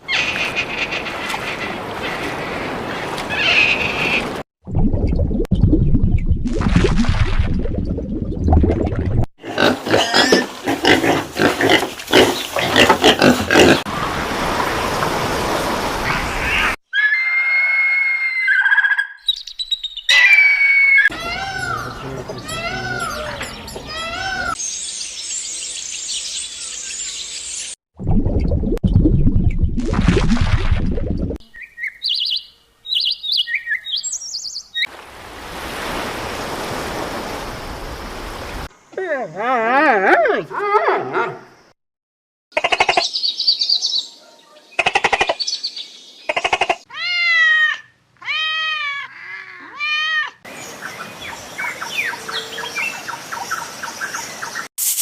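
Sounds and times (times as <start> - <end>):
drawn-out rising and falling calls: 0.0 - 4.4, 15.2 - 27.5, 31.5 - 37.2
small birds chirping: 18.7 - 20.2, 31.4 - 34.9.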